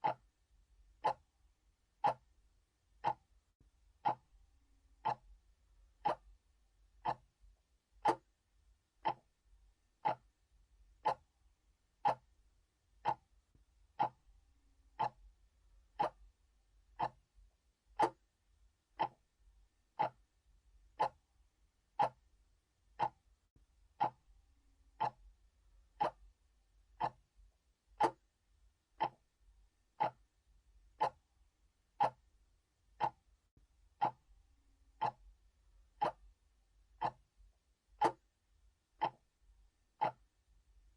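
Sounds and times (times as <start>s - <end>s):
analog clock ticking: 0.0s - 0.3s, 1.0s - 1.3s, 2.0s - 2.3s, 3.0s - 3.3s, 4.0s - 4.4s, 5.0s - 6.4s, 7.0s - 8.4s, 9.0s - 9.4s, 10.0s - 10.4s, 11.0s - 11.3s, 12.0s - 12.3s, 13.0s - 14.3s, 14.9s - 15.3s, 15.9s - 16.4s, 17.0s - 17.3s, 18.0s - 18.3s, 19.0s - 19.3s, 19.9s - 20.3s, 20.9s - 21.3s, 22.0s - 22.2s, 23.0s - 23.3s, 24.0s - 24.3s, 24.9s - 25.4s, 26.0s - 26.4s, 27.0s - 27.3s, 27.9s - 28.3s, 29.0s - 29.3s, 29.9s - 30.3s, 30.9s - 31.3s, 32.0s - 32.3s, 33.0s - 33.3s, 34.0s - 38.4s, 39.0s - 40.4s.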